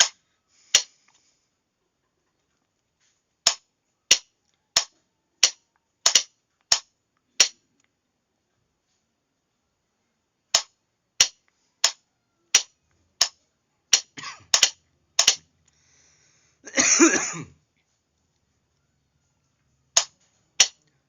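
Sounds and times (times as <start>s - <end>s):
person coughing: 14.2s - 14.5s, 16.7s - 17.6s.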